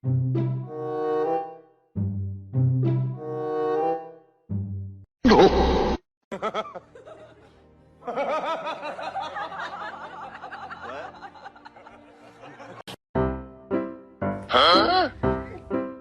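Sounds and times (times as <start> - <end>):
music: 0.0 - 5.0, 6.4 - 16.0
people laughing and giggling: 6.3 - 12.9.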